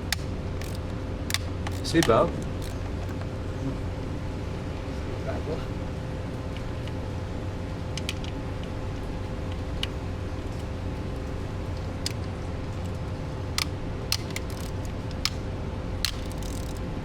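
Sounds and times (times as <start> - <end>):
hand tools clicking on screws: 0.0 - 3.2, 13.6 - 15.4, 16.0 - 16.8
steady low hum: 0.0 - 17.0.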